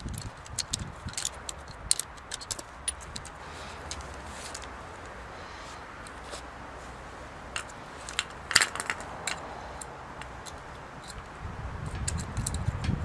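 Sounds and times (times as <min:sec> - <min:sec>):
metal tools clicking and clinking: 0:00.0 - 0:04.8, 0:07.6 - 0:11.3.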